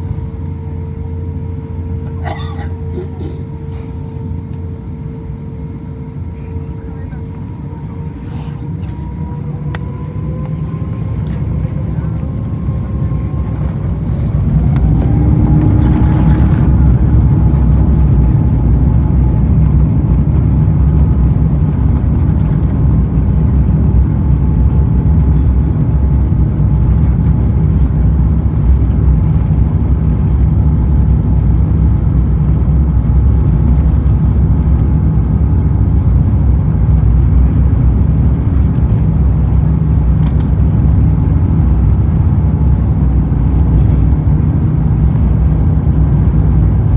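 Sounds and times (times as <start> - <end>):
rising engine whine: 0.0 - 46.9
jet engines spooling up: 3.2 - 26.9.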